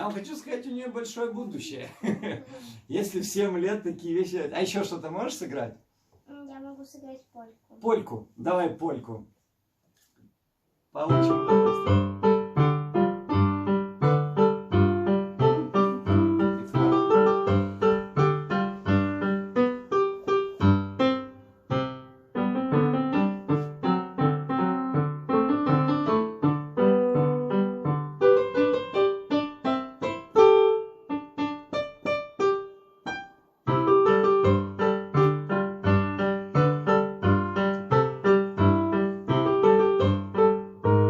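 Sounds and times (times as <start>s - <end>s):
keyboard polka: 11.1s - 19.6s.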